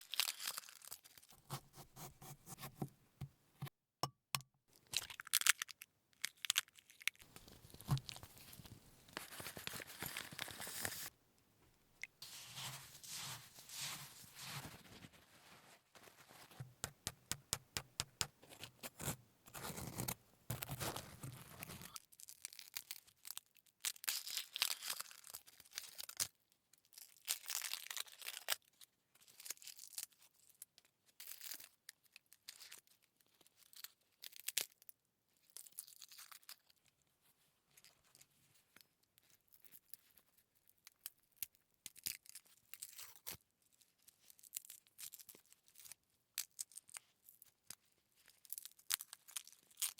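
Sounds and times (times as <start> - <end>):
tearing and crinkling: 0.0 - 1.7, 4.9 - 11.1, 12.2 - 16.6, 18.4 - 26.3, 40.8 - 49.9.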